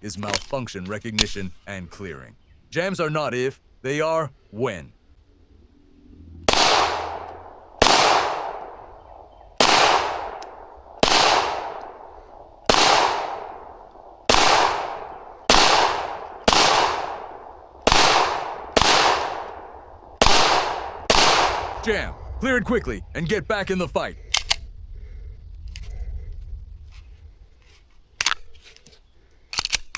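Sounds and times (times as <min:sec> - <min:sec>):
pistol shots echoing: 0:06.5 - 0:21.9.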